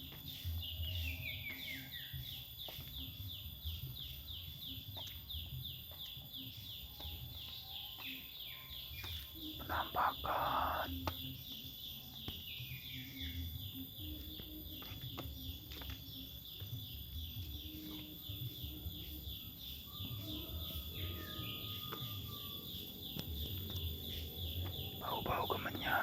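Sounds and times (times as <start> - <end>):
bird chirping: 0.0 - 26.0.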